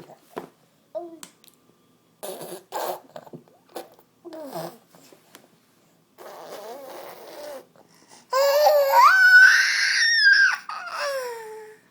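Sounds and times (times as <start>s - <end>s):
baby crying loudly: 8.4s - 11.7s.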